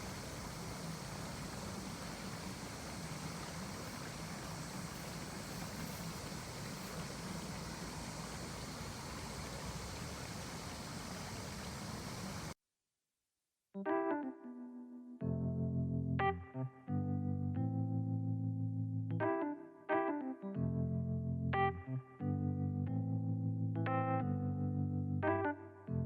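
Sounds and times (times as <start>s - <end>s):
steady rain falling: 0.0s - 12.6s.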